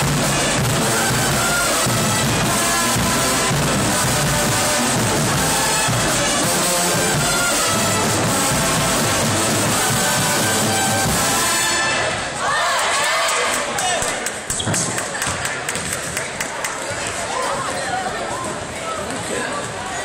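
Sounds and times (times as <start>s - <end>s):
marching band playing: 0.0s - 12.4s.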